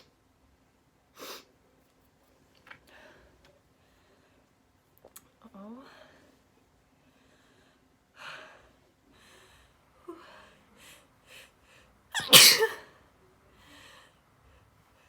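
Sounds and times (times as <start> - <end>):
person sneezing loudly: 12.2 - 12.8.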